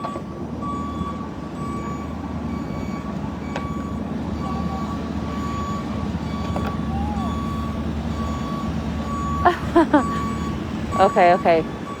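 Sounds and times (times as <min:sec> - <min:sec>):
reversing alarm beeping: 0:00.0 - 0:12.0
truck engine rumble: 0:00.0 - 0:12.0.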